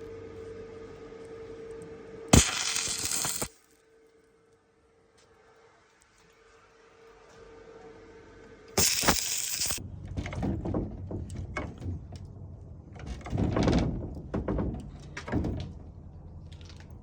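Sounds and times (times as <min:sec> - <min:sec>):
door knocks and rattles: 0:10.1 - 0:12.2, 0:13.0 - 0:16.0.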